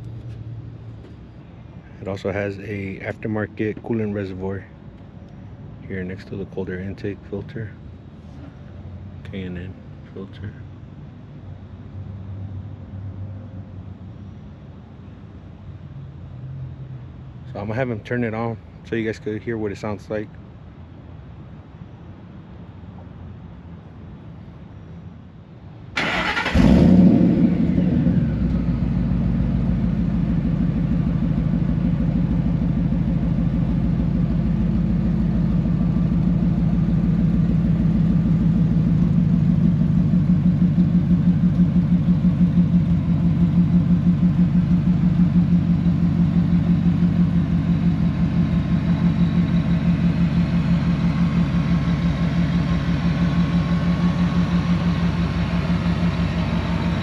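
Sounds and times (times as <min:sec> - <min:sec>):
engine starting and idling: 0:26.0 - 0:29.1.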